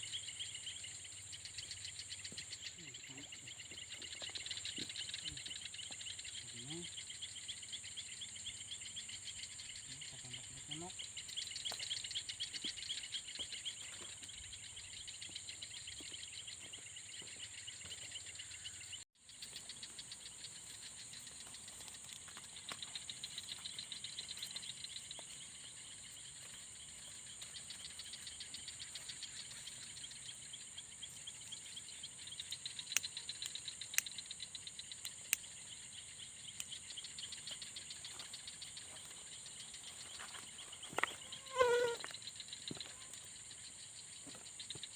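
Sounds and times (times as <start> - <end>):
crickets chirping: 0.0 - 44.9.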